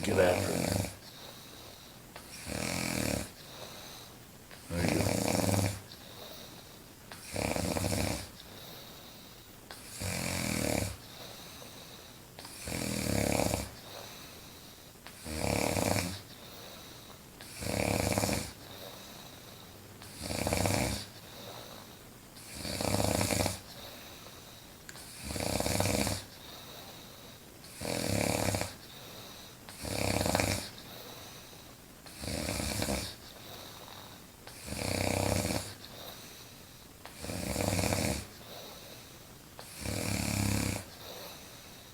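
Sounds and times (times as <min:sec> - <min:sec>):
woman snoring loudly: 0:00.0 - 0:01.0, 0:02.4 - 0:03.3, 0:04.7 - 0:05.8, 0:07.3 - 0:08.3, 0:12.6 - 0:13.7, 0:15.2 - 0:16.2, 0:17.6 - 0:18.6, 0:20.2 - 0:21.1, 0:22.5 - 0:23.6, 0:25.2 - 0:26.3, 0:27.8 - 0:28.8, 0:29.8 - 0:30.7, 0:34.6 - 0:35.8, 0:37.2 - 0:38.3, 0:39.7 - 0:40.9.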